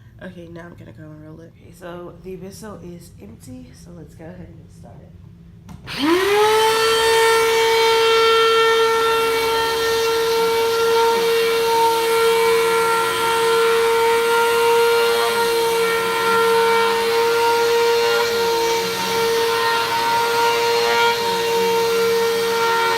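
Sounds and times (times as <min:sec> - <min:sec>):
vacuum cleaner motor whine: 0:05.7 - 0:22.9.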